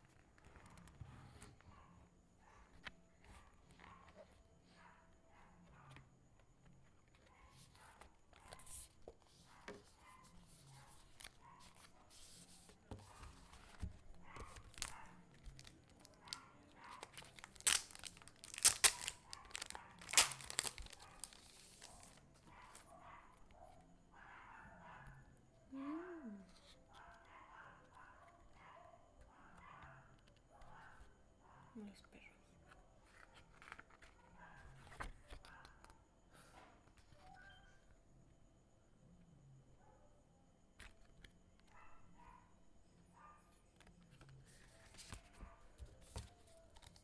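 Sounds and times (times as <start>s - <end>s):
packaging tearing and crinkling: 14.5s - 16.4s, 17.0s - 22.2s.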